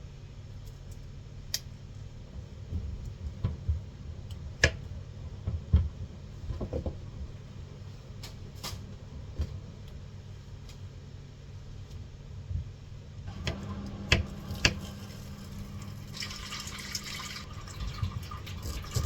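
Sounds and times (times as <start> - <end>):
knife cutting fruit on board: 13.4 - 14.9.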